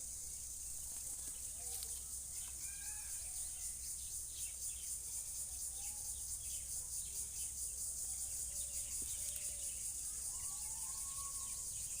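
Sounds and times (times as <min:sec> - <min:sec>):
soft gliding bird calls: 0:00.0 - 0:03.8, 0:08.1 - 0:12.0
faint bird chirps: 0:00.0 - 0:12.0.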